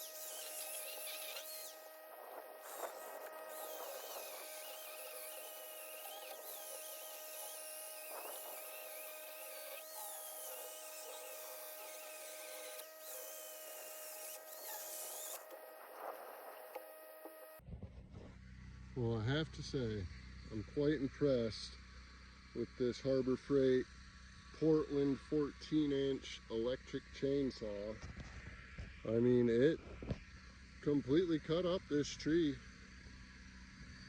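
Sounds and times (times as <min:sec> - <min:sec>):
electric chainsaw whine: 0:00.0 - 0:17.6.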